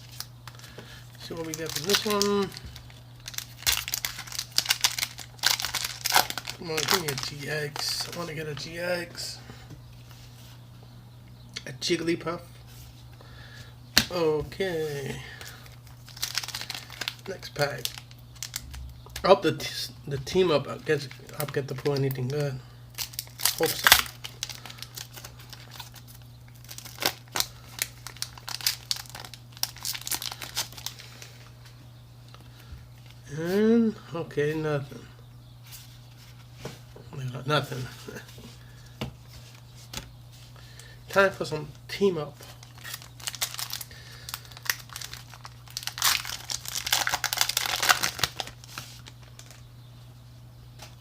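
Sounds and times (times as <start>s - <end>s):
foil wrapper crinkling and tearing: 0.0s - 8.7s, 14.8s - 19.2s, 21.0s - 31.5s, 42.4s - 49.7s
low steady hum: 0.0s - 51.0s.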